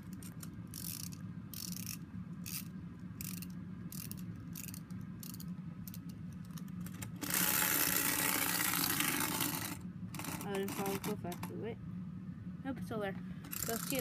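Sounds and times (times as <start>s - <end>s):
wind-up toy ratchet clicking: 0.0s - 11.2s, 13.5s - 14.0s
low steady hum: 0.0s - 14.0s
loud steady noise: 13.4s - 14.0s.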